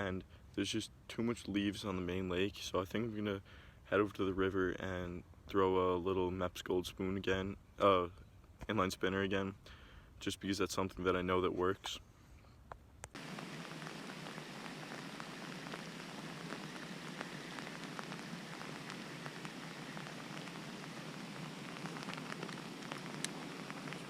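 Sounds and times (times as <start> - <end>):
heavy rain falling: 13.2 - 24.0.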